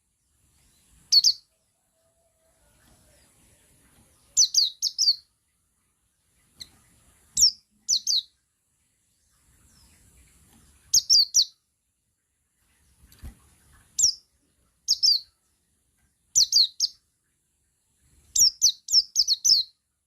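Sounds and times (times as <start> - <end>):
bird high downward chirps: 0.6 - 1.6, 2.7 - 5.3, 6.4 - 8.4, 9.6 - 11.6, 14.0 - 14.3, 14.9 - 15.4, 16.3 - 17.0, 18.3 - 19.8.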